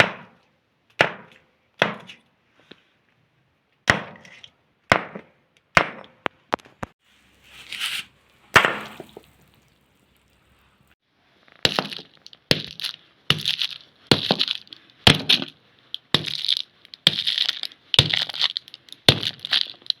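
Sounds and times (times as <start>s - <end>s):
crackling and breaking: 11.5s - 20.0s.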